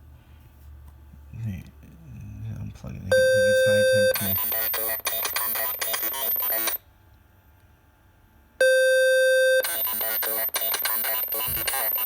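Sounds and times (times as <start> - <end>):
steady beep: 3.1 - 5.3
robotic synthesized voice: 3.8 - 6.0, 9.9 - 12.0.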